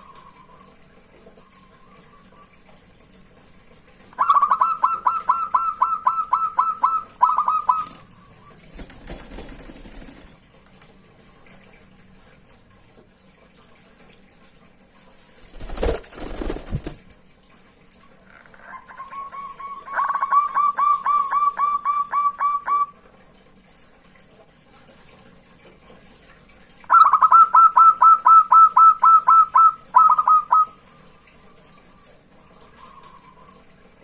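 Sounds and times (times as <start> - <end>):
dove cooing: 4.2 - 8.6, 18.3 - 23.0, 26.9 - 30.9.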